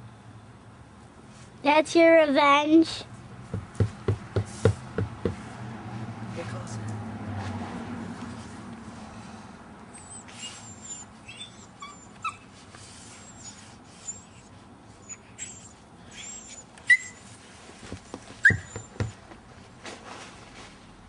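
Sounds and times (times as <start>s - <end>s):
puppy sharp yelps: 9.9s - 12.5s, 13.2s - 17.3s, 18.4s - 19.2s
puppies whining and yipping: 9.9s - 17.4s, 18.0s - 19.3s.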